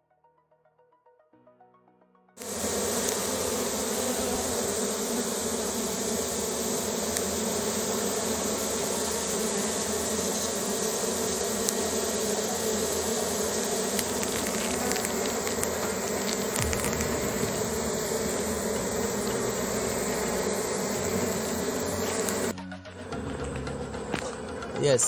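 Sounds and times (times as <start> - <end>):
bees buzzing: 2.4 - 25.0.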